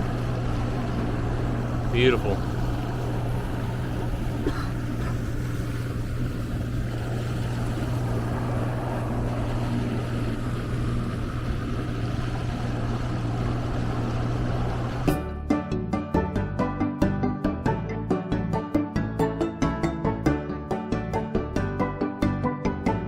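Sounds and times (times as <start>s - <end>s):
wind: 0.0s - 15.2s
boat motor humming: 0.0s - 23.0s
water noise of moving boat: 0.0s - 23.0s.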